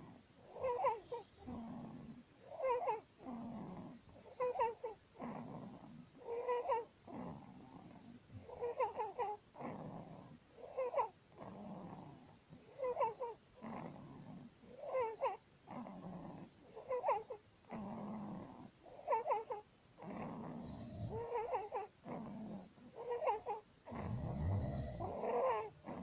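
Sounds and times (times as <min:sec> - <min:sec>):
baby breathing with stridor: 0:20.6 - 0:21.7.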